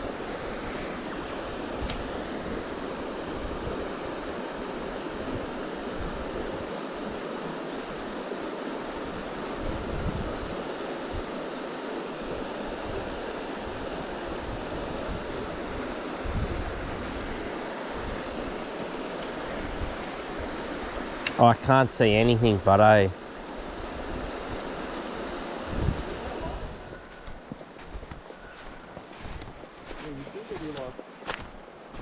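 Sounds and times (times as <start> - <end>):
river water flowing: 0.0 - 32.0
wind buffeting microphone: 9.0 - 11.4, 12.3 - 21.2, 23.7 - 30.0.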